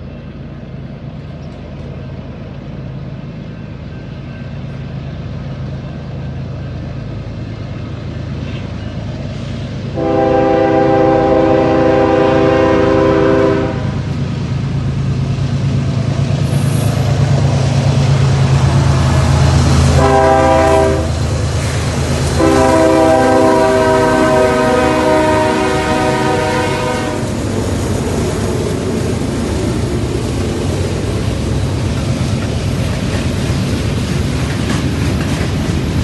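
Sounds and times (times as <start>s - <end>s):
diesel locomotives running: 0.0s - 36.0s
train air horn blasts: 9.9s - 14.1s, 19.9s - 21.2s, 22.3s - 27.3s.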